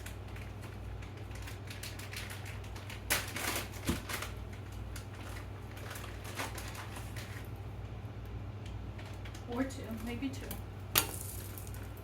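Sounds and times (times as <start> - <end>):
plastic package rustling: 0.0 - 7.6.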